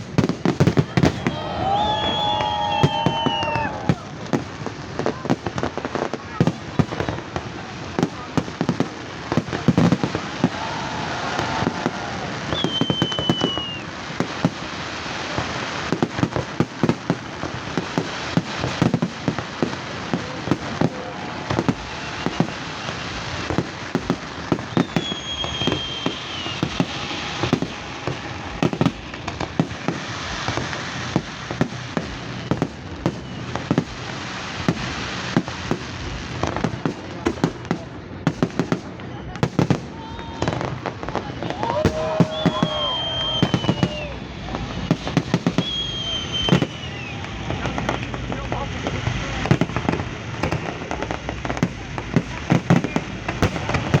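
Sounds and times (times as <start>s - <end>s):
fireworks bangs and pops: 0.0s - 54.0s
fireworks crackling: 0.0s - 54.0s
firework whistle falling in pitch: 0.7s - 4.1s, 10.1s - 13.9s, 21.5s - 23.0s, 24.5s - 30.6s, 41.4s - 44.2s, 44.9s - 48.0s.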